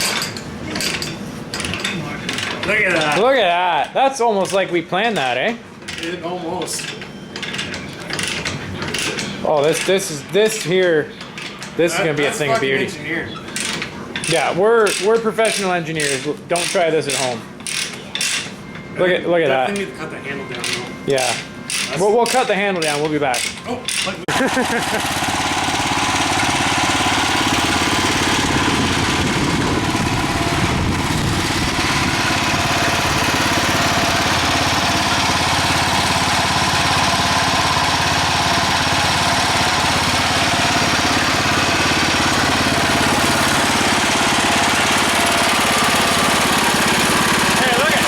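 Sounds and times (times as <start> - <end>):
small engine running: 24.3 - 48.0.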